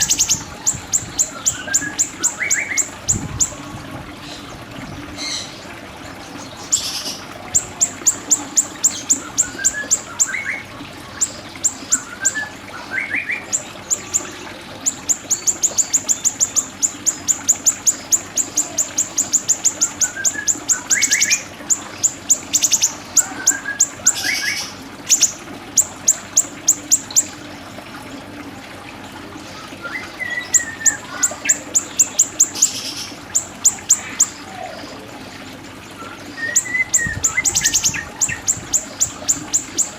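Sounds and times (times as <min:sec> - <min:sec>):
bird whistled phrases: 0:07.6 - 0:14.3, 0:29.7 - 0:33.0, 0:36.0 - 0:39.9.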